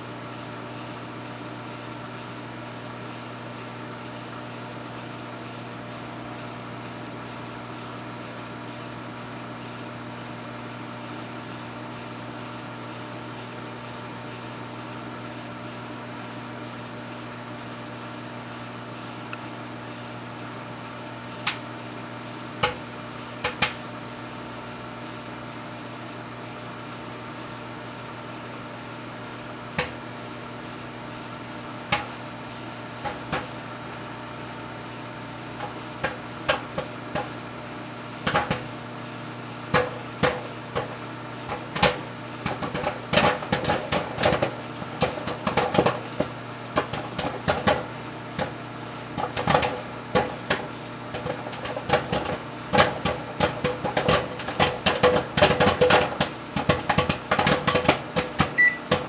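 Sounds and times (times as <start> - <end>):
microwave oven humming: 0.0 - 59.0
popcorn popping: 20.6 - 59.0.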